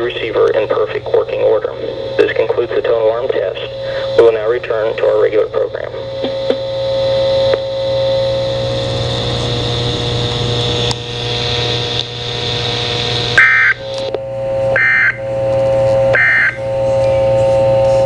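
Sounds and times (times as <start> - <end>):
electronic data bursts: 0.0 - 6.8, 13.3 - 13.9, 16.1 - 17.3
steady buzzing tone: 0.0 - 18.0.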